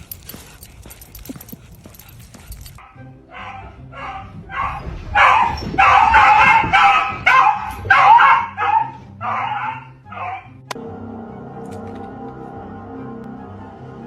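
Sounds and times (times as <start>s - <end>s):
dog barking and yelping: 0.0s - 10.6s.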